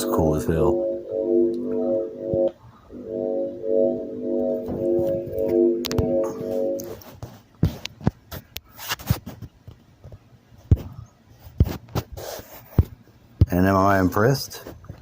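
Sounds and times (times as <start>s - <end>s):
synthesizer-like tone: 0.0s - 7.1s.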